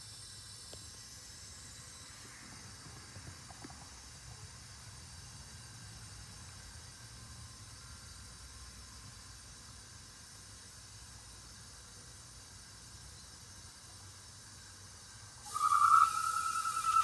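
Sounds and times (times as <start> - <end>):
gas meter high tone: 15.5 - 17.0.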